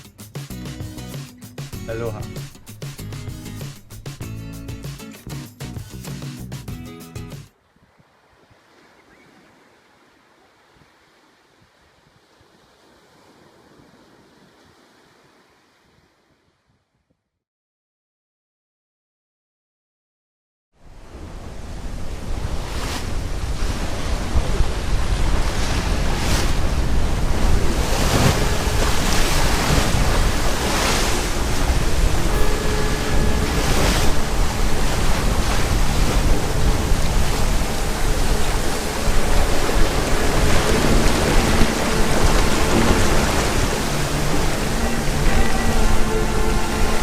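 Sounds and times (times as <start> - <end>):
sea waves: 7.5 - 16.6, 20.8 - 47.0
wind buffeting microphone: 21.1 - 47.0.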